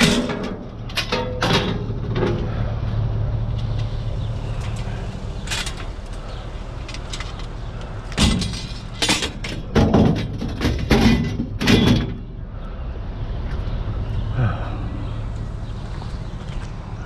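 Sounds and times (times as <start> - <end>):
scrap metal clanking: 0.0 - 2.7, 8.1 - 12.2
vehicle engine idling: 0.0 - 9.8, 11.8 - 17.0.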